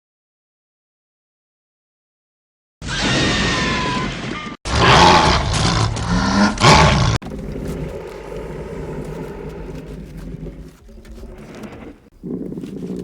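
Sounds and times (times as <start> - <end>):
monster roar with high cry: 4.7 - 10.8
louder monster roar: 4.7 - 12.1.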